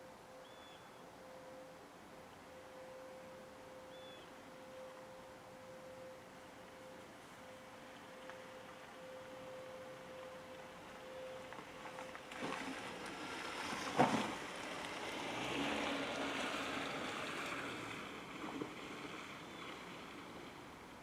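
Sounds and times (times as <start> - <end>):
vehicle tyre noise passing: 11.4 - 20.8.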